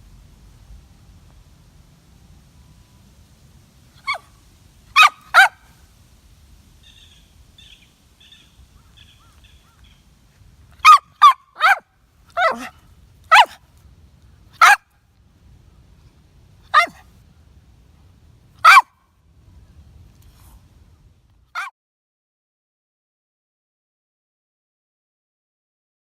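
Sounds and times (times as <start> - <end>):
small dog yapping: 4.0 - 4.3, 5.0 - 5.7, 10.8 - 13.6, 14.6 - 14.8, 16.7 - 17.0, 18.6 - 18.9.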